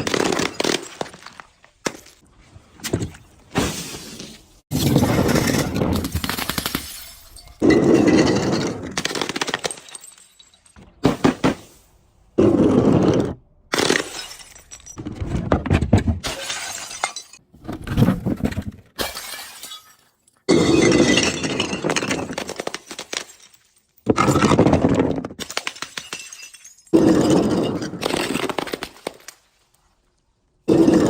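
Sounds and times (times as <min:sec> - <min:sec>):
glass bottles breaking: 0:04.7 - 0:11.6, 0:13.8 - 0:15.0, 0:16.2 - 0:17.4, 0:19.0 - 0:24.8, 0:25.4 - 0:29.4.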